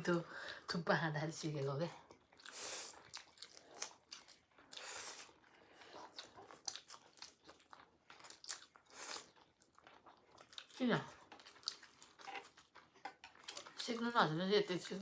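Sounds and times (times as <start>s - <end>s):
chewing and biting food: 2.0s - 13.8s.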